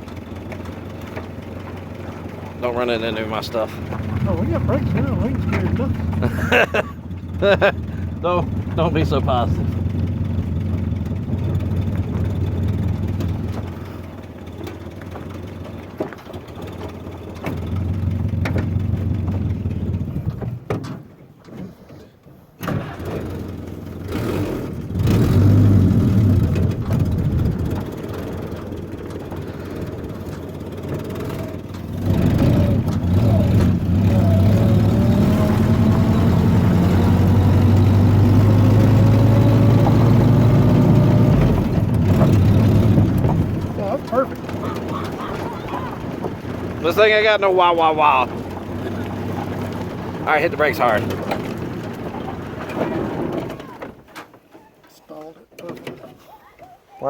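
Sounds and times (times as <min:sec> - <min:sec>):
car engine accelerating: 0:00.0 - 0:20.7, 0:22.6 - 0:54.1.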